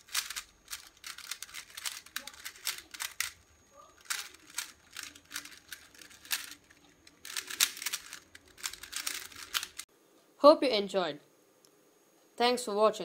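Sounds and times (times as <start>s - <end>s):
puzzle cube layers clicking: 0.0s - 3.4s, 4.0s - 9.9s.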